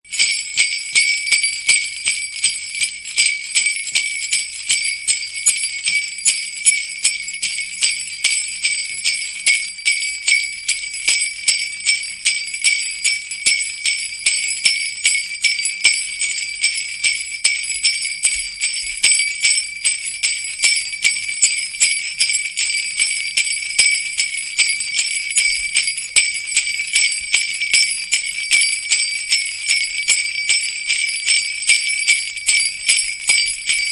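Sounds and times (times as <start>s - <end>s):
sleigh bells jingling: 0.0s - 33.9s.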